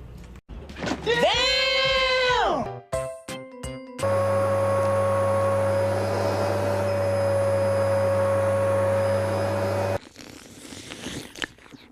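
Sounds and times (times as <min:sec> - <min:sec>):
low buzz: 0:04.0 - 0:10.0.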